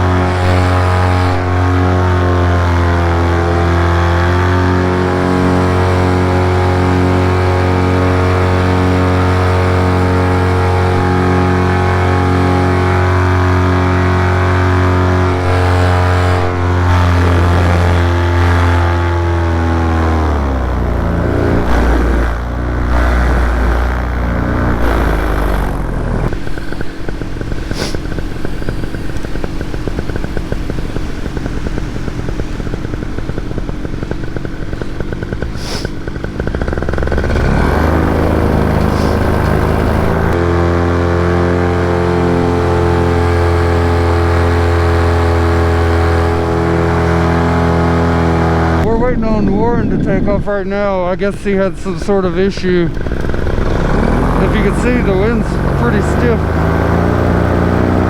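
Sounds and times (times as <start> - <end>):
paramotor engine and propeller: 0.0 - 58.0.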